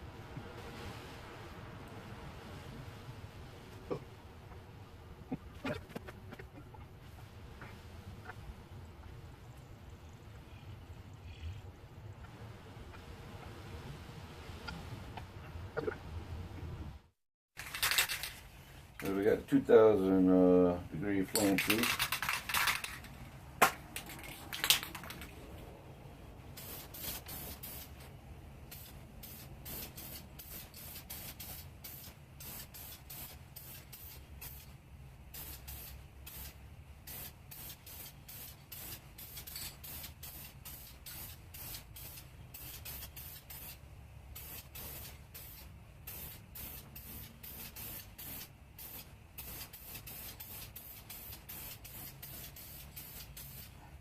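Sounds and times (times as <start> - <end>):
low steady hum: 0.0 - 54.0
aerosol paint spray hissing: 26.5 - 28.1, 28.7 - 53.9.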